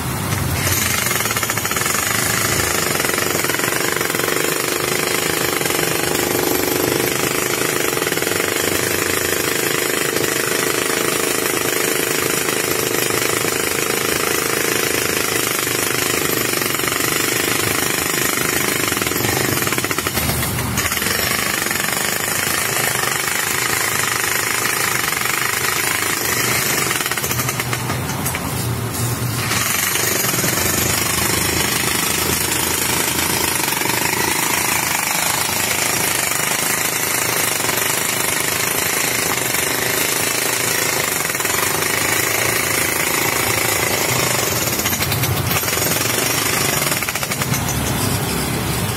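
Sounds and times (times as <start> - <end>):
jackhammer hammering: 0.0 - 28.6, 29.3 - 48.9.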